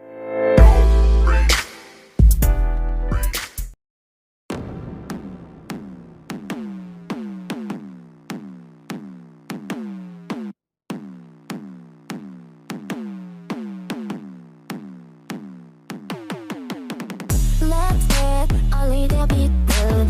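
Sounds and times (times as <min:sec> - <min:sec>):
loud electronic beat: 0:00.6 - 0:03.7, 0:05.2 - 0:20.0
drum machine hits: 0:04.5 - 0:10.5.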